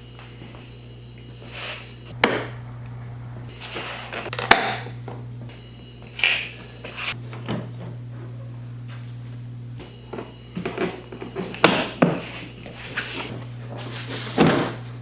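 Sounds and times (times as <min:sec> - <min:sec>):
steady low hum: 0:00.0 - 0:15.0
parts rubbing and rustling: 0:03.5 - 0:05.5, 0:06.1 - 0:09.2, 0:10.1 - 0:15.0.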